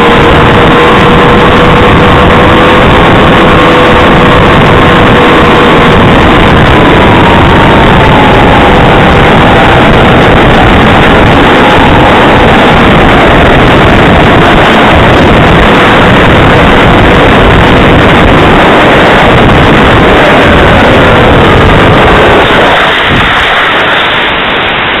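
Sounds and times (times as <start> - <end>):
electric motor whine: 0.0 - 25.0
wind noise on microphone: 0.0 - 25.0.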